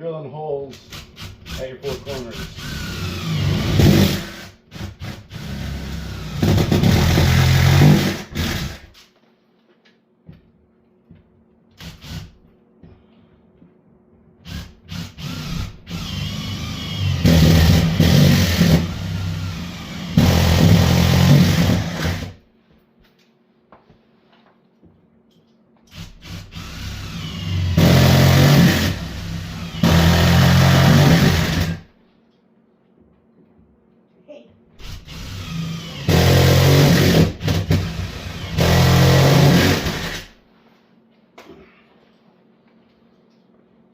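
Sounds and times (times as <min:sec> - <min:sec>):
electric drill boring: 0:02.4 - 0:08.8, 0:11.8 - 0:12.3, 0:14.5 - 0:22.3, 0:25.9 - 0:31.8, 0:34.8 - 0:40.3.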